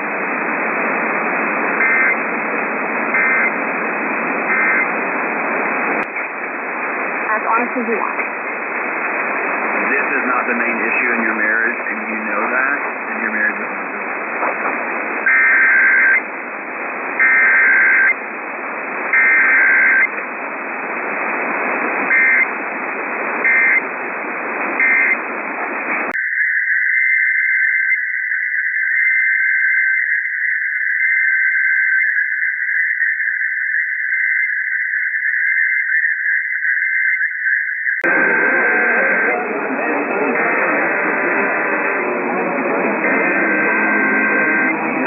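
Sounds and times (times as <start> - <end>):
radio static: 0.0 - 45.0
high warbling data tone: 26.2 - 39.4
screeching data bursts: 26.2 - 39.4.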